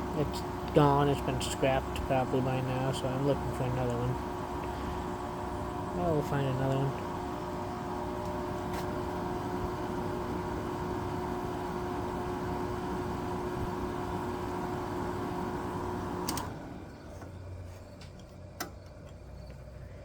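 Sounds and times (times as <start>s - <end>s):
air conditioner humming: 0.0s - 20.0s
click: 16.2s - 16.5s, 18.0s - 19.6s.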